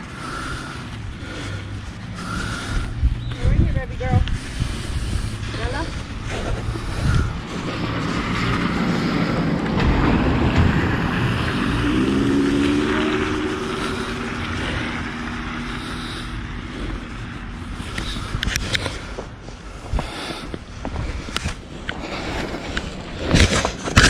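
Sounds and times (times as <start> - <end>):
car driving past: 5.3 - 16.6.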